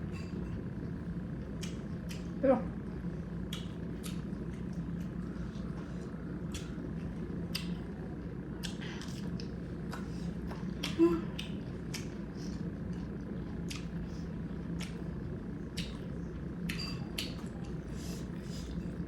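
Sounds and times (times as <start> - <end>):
steady low hum: 0.0 - 19.0
chewing: 3.5 - 7.9, 8.6 - 14.2
wet lip-smacking clicks: 7.5 - 7.8, 13.7 - 13.9, 15.7 - 16.0.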